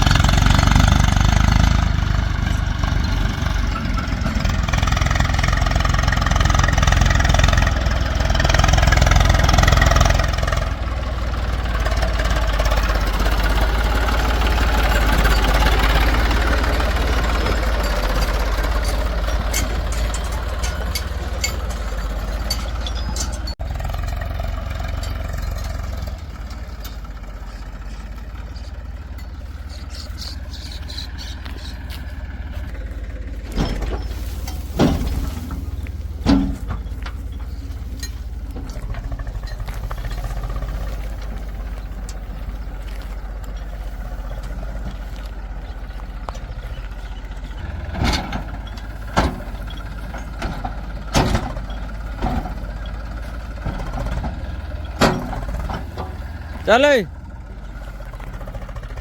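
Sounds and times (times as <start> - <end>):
metal knocks and clanks: 0.0 - 45.0, 45.6 - 57.0
heavy diesel engine running: 0.0 - 59.0.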